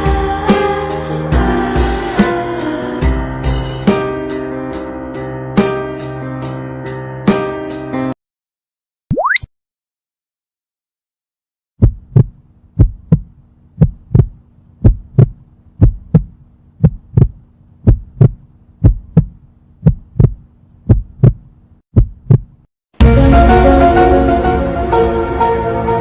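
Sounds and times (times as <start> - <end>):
music: 0.0 - 8.2, 23.0 - 26.0
heartbeat thumps: 11.8 - 22.6.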